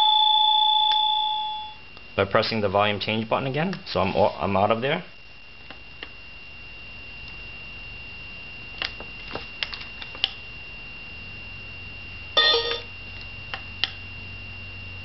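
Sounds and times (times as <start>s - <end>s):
electronic doorbell beep: 0.0s - 1.8s, 12.4s - 12.9s
faint high whine: 0.0s - 15.0s
doorbell button clicks: 12.4s - 12.9s.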